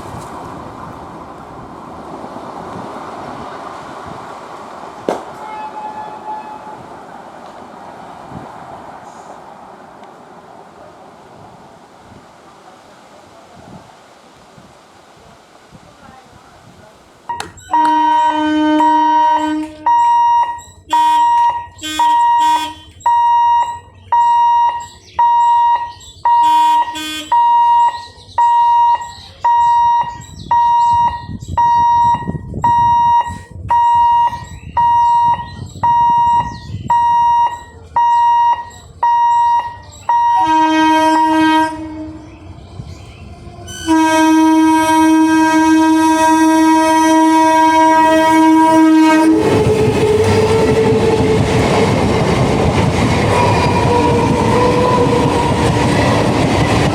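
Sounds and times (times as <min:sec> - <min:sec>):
passing train rumble: 0:00.0 - 0:56.9
train horn blasts: 0:05.3 - 0:07.1, 0:17.3 - 0:23.8, 0:26.3 - 0:27.8, 0:39.1 - 0:42.7, 0:43.4 - 0:51.5.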